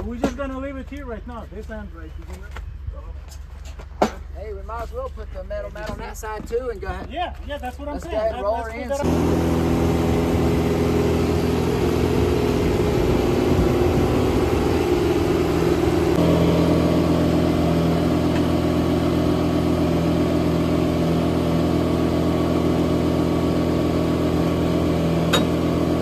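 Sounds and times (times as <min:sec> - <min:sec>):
machine engine running: 0:09.0 - 0:26.0.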